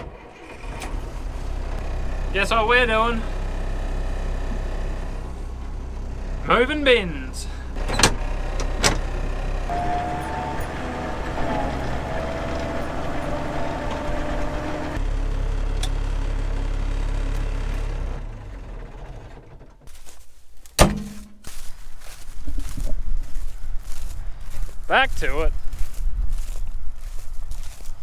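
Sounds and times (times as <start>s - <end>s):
vehicle engine whining: 0.0s - 28.0s
sharp knock: 20.8s - 21.3s.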